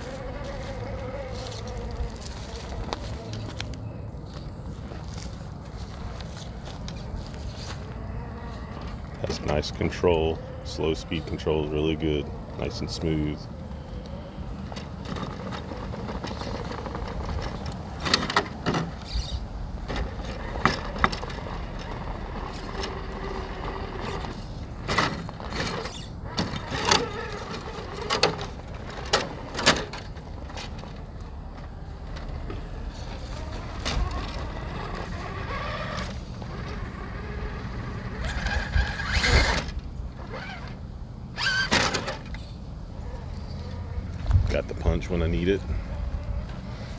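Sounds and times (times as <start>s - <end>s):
electric motor and drivetrain: 0.0s - 46.9s.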